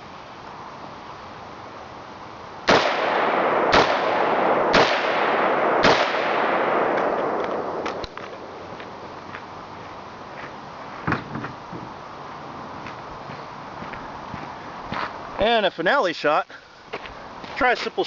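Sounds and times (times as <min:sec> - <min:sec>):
rifle shots with echo: 0:02.7 - 0:08.6.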